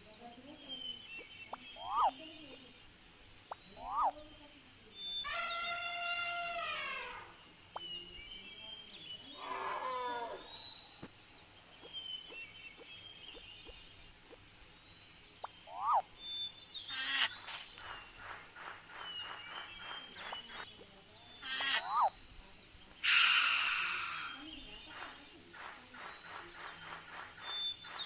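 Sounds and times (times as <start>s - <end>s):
high chirps and whistles: 0.8s - 2.1s, 15.4s - 18.2s
fast repeated animal calls: 1.8s - 2.2s, 15.7s - 16.0s, 21.4s - 22.1s, 23.0s - 27.6s
animal call falling in pitch: 5.3s - 7.3s, 9.4s - 10.6s, 23.0s - 24.4s.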